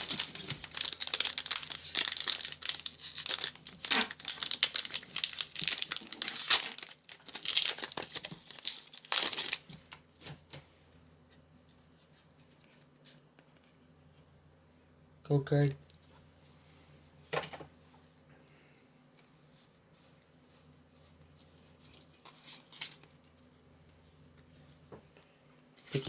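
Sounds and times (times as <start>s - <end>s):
foil wrapper crinkling and tearing: 0.0s - 10.3s.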